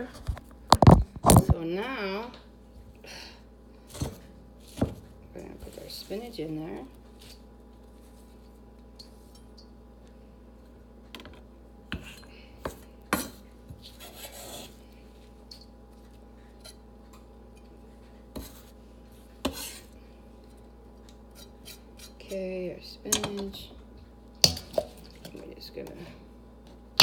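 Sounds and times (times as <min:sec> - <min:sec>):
utensil scraping: 0:13.8 - 0:14.8, 0:19.4 - 0:19.9.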